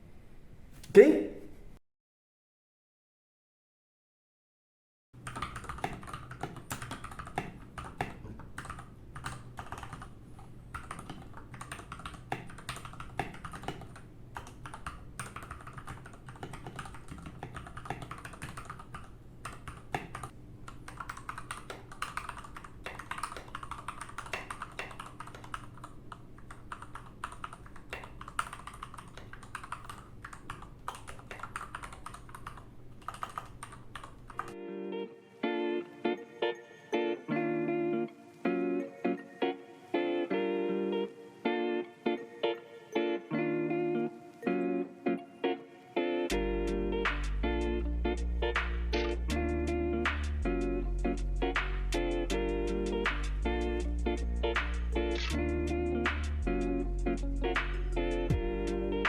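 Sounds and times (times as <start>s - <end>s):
fast typing on mechanical keyboard: 5.2s - 34.6s.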